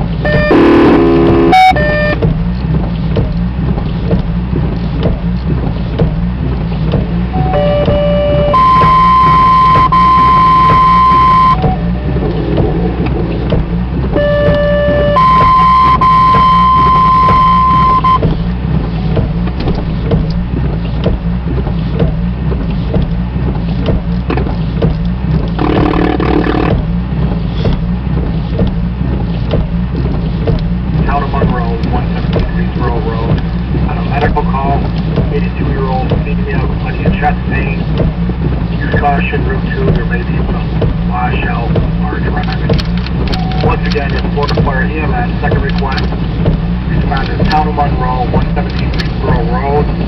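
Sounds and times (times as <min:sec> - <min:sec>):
burst of radio noise: 0:00.3 - 0:02.2, 0:25.6 - 0:26.8
two-tone paging tones: 0:00.3 - 0:02.2, 0:07.4 - 0:12.0, 0:14.2 - 0:18.2, 0:25.6 - 0:26.8, 0:43.3 - 0:43.8
radio hum and hiss: 0:00.4 - 0:02.2, 0:43.6 - 0:46.1, 0:46.9 - 0:50.0.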